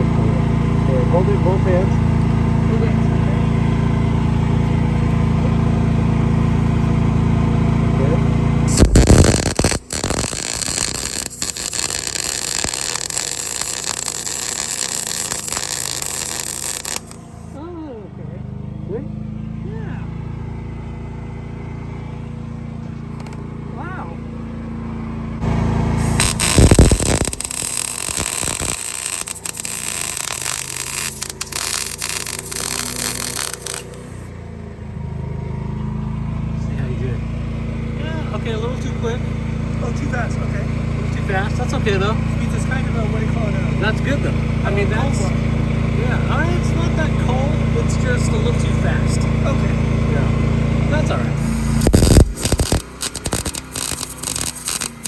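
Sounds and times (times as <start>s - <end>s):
steady low hum: 8.0s - 17.8s, 20.2s - 35.0s, 50.9s - 55.0s
welding arc crackling hiss: 8.7s - 17.6s, 25.8s - 34.3s, 51.4s - 55.0s.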